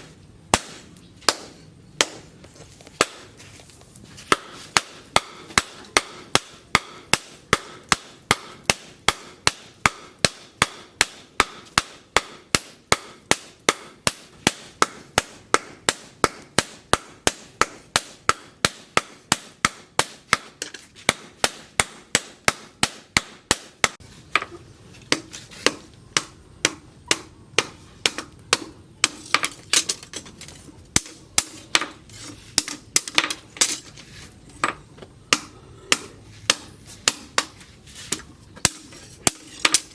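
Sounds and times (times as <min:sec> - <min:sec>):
hammer striking steel on anvil: 0:04.3 - 0:24.5, 0:25.1 - 0:30.3, 0:34.6 - 0:39.9.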